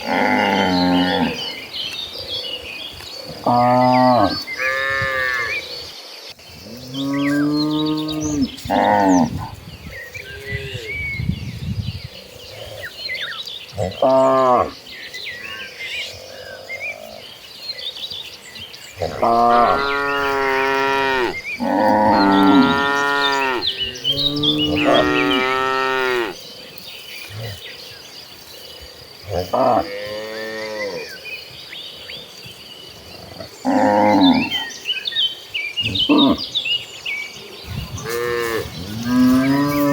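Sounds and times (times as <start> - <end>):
insects chirring: 0.0 - 39.9
cattle mooing: 19.0 - 26.4, 38.0 - 39.9.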